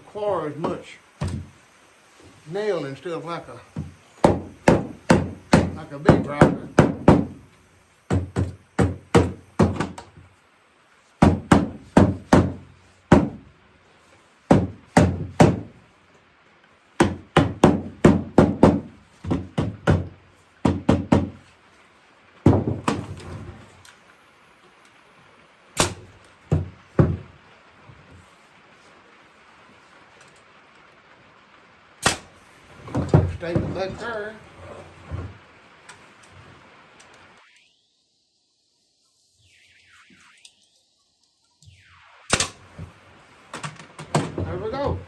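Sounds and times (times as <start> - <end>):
hammer striking wood: 3.8 - 7.4, 8.1 - 10.2, 11.2 - 13.4, 14.5 - 15.7, 17.0 - 21.4, 22.4 - 23.2, 25.8 - 27.3.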